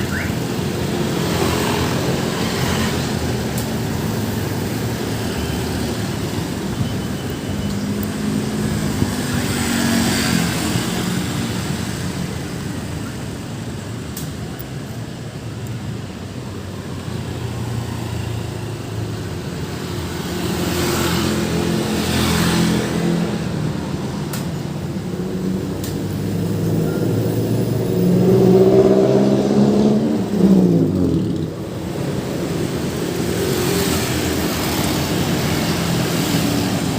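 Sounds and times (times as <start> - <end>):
cars passing on road: 0.0 - 36.9.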